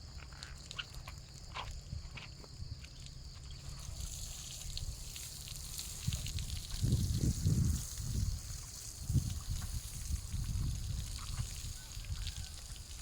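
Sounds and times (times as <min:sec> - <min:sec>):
water trickling and splashing: 0:00.0 - 0:13.0.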